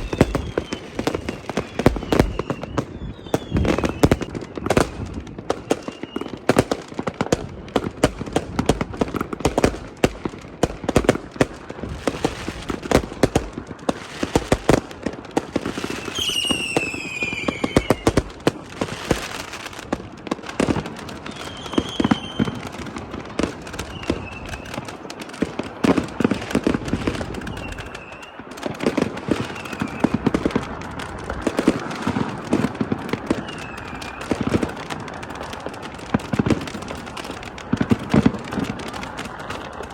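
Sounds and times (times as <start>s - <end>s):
falling firework whistle: 0.0s - 6.6s, 15.5s - 19.8s, 20.6s - 22.9s, 23.6s - 25.1s, 26.2s - 35.3s
fireworks crackling and banging: 0.0s - 39.9s.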